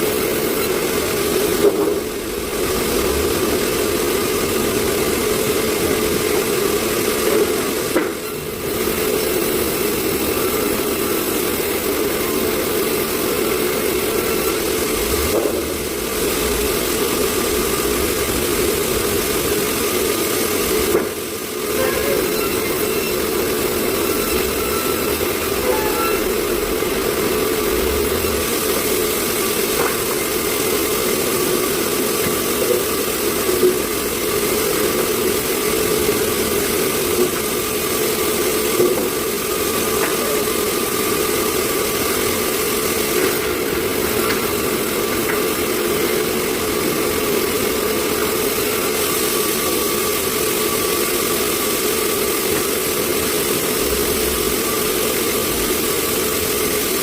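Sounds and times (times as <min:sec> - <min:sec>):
sawmill machinery drone: 0:00.0 - 0:57.0.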